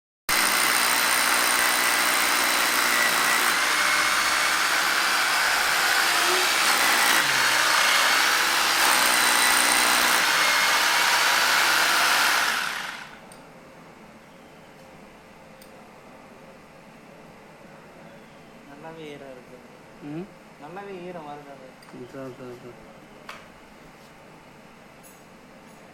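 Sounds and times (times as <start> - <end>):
electric drill boring: 0.3 - 13.2.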